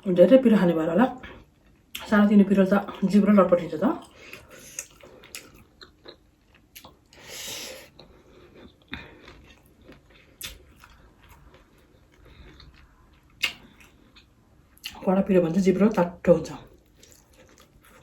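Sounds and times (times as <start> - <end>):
close-up chewing: 4.0 - 15.0, 16.7 - 18.0
wet mouth clicks and smacks: 13.4 - 15.0.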